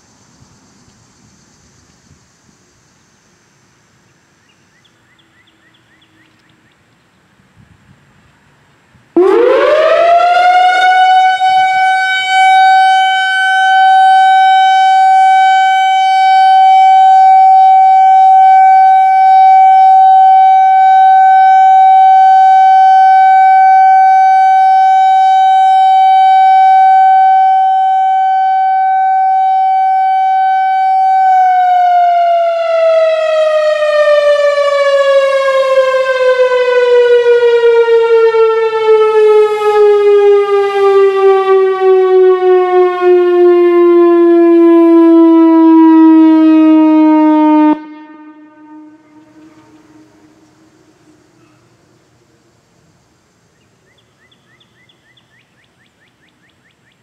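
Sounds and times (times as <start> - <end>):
outdoor warning siren: 9.1 - 52.4.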